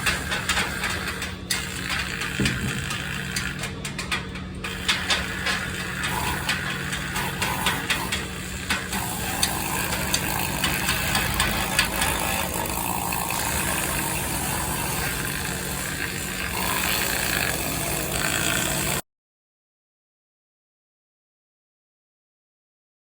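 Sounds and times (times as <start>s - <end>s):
sharp clicks and knocks: 0.0s - 14.3s
engine running: 0.0s - 19.0s.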